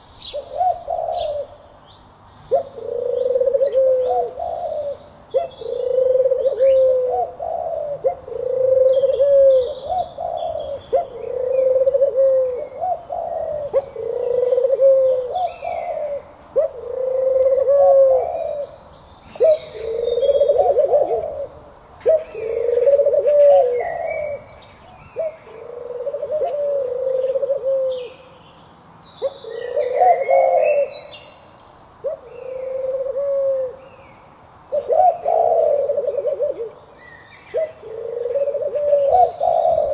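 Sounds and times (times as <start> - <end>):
pigeon cooing: 0.0 - 1.7, 2.5 - 18.7, 19.3 - 28.3, 29.2 - 31.1, 32.0 - 33.8, 34.7 - 39.9
small birds chirping: 0.0 - 11.8.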